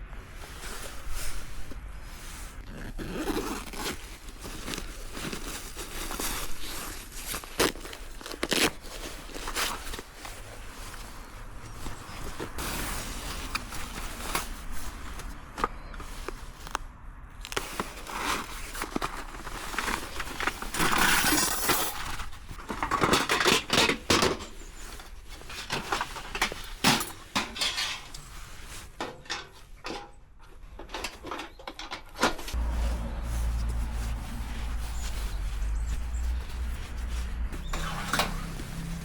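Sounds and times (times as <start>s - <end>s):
metal camp gear clinking: 17.5s - 32.6s
steady low rumble: 32.5s - 39.0s.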